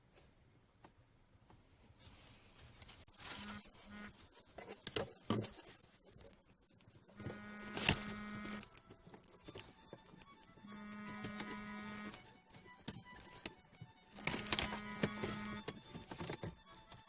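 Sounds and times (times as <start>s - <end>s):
buzzing hum: 3.2s - 4.3s, 7.1s - 17.0s
plastic clicks and rustling: 4.4s - 17.0s.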